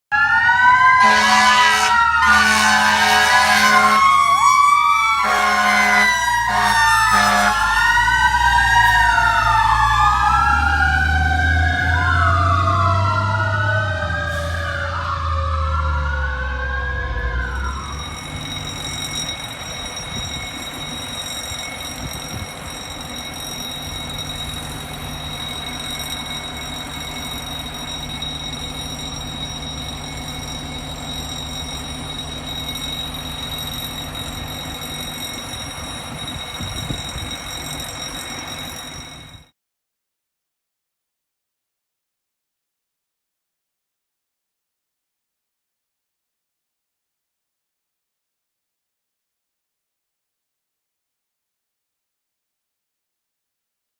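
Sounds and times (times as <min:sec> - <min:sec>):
fire truck sirens wailing: 0:00.1 - 0:39.5.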